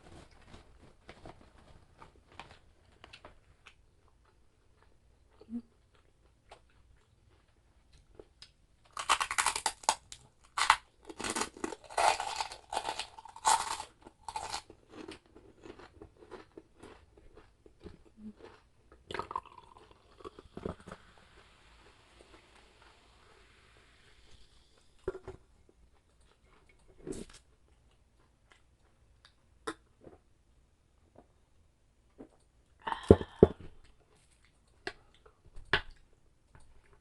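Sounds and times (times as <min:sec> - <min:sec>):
crunching crispy food: 0:08.8 - 0:20.7.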